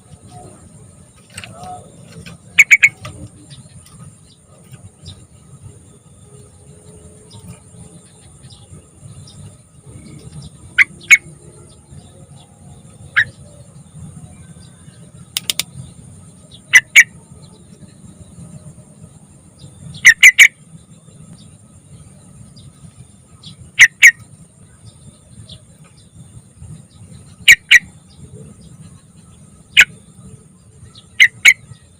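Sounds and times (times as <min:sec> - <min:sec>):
faint steady hum: 0:00.0 - 0:31.9
bird sharp call notes: 0:01.3 - 0:03.3, 0:16.7 - 0:17.2, 0:20.0 - 0:20.6, 0:27.4 - 0:27.9, 0:31.0 - 0:31.7.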